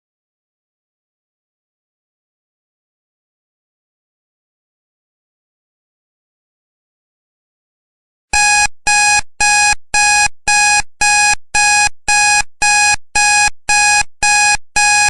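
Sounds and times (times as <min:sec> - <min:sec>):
timer alarm beeping: 0:08.4 - 0:15.0.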